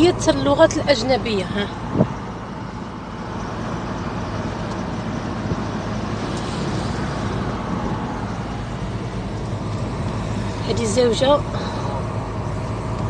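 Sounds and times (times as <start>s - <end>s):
car engine hum: 0.0s - 13.0s
tyre and wind noise: 1.8s - 2.3s.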